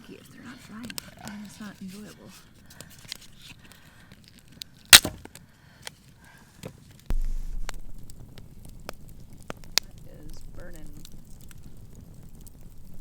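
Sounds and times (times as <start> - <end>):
campfire crackling and popping: 0.0 - 13.0
low rumble: 7.1 - 13.0.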